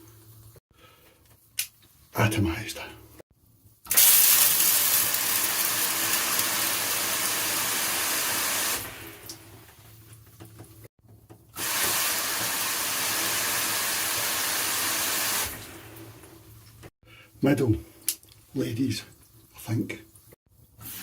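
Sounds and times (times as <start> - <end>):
shower head spraying water: 3.9 - 9.4, 11.6 - 15.8.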